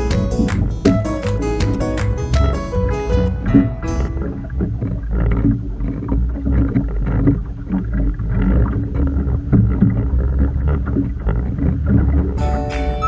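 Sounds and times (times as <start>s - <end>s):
flute music: 0.0s - 4.6s, 12.4s - 13.0s
boat engine low rumble: 0.0s - 13.0s
water splashing: 0.0s - 13.0s.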